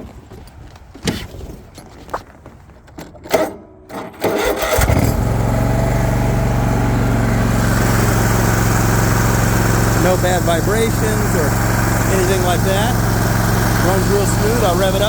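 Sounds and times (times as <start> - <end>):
mower engine starting and running: 3.9 - 15.0.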